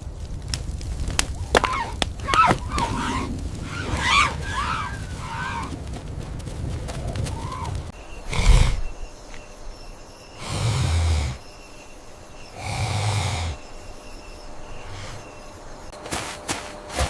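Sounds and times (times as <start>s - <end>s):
rough animal calls: 1.2s - 5.8s, 7.0s - 9.5s, 10.3s - 11.6s, 12.4s - 15.6s.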